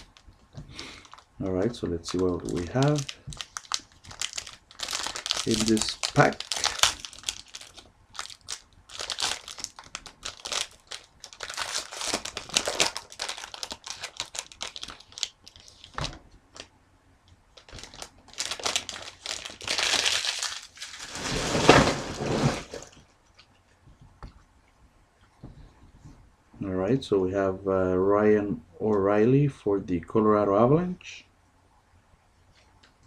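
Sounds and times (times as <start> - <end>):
wrapper tearing and crinkling: 0.0 - 16.7, 17.6 - 23.0.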